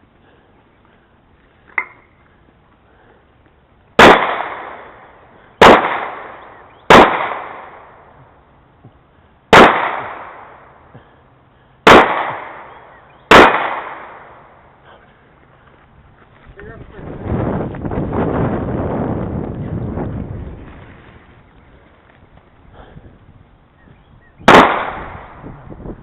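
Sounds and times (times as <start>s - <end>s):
handgun shots echoing: 4.0s - 4.9s, 5.6s - 7.8s, 9.5s - 10.5s, 11.8s - 14.3s, 24.5s - 25.4s.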